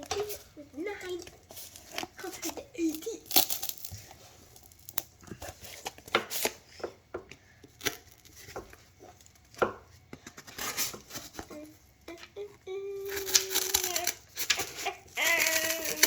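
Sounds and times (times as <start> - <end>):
scissors cutting cardboard: 13.0 - 16.0.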